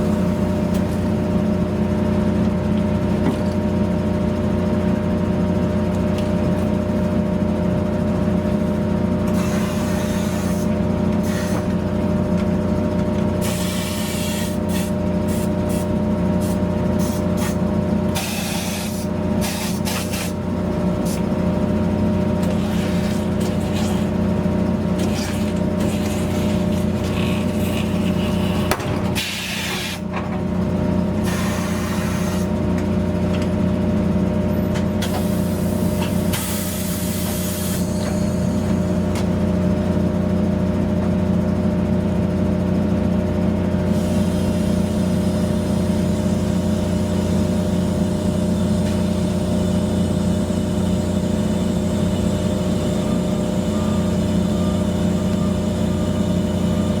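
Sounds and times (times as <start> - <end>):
mechanical hum: 0.0 - 57.0
compressed air hiss: 13.4 - 17.6, 18.2 - 20.4.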